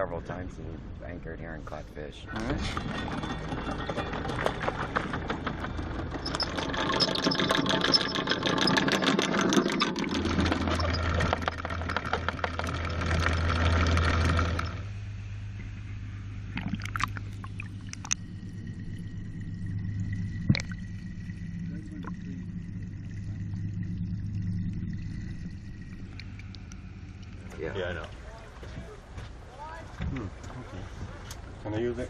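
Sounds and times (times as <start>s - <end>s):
boat engine humming: 0.0s - 32.0s
loud rattling clatter: 2.6s - 14.8s.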